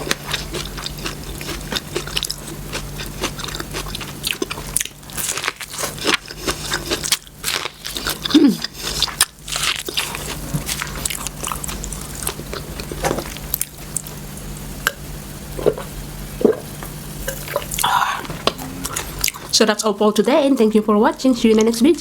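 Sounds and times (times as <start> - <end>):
chewing food with crunches: 0.0 - 15.0, 17.3 - 19.9.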